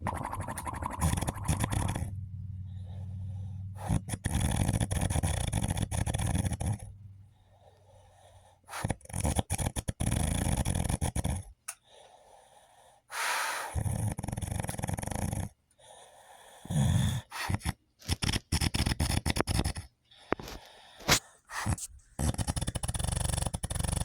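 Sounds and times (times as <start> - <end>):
man snoring loudly: 3.8 - 6.9, 8.8 - 11.4, 22.2 - 24.0.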